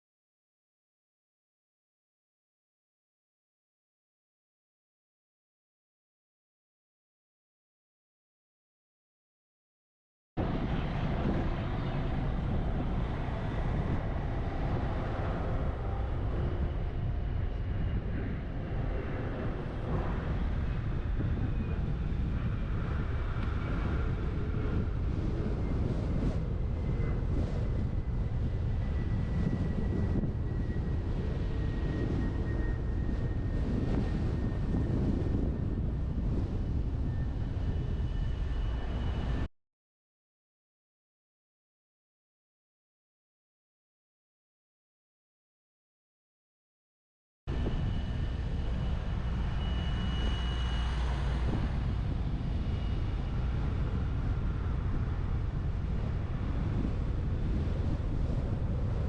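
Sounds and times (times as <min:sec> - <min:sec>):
faint whine: 0:10.4 - 0:39.5, 0:47.5 - 0:59.0
wind buffeting microphone: 0:10.4 - 0:39.5, 0:47.5 - 0:59.0.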